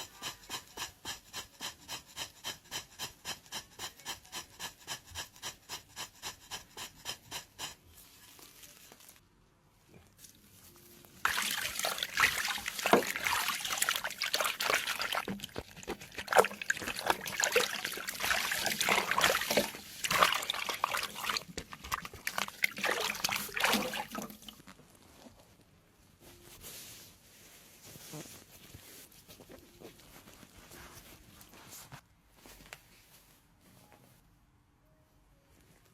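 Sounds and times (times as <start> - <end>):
crackling and splashing noise: 11.2 - 25.0.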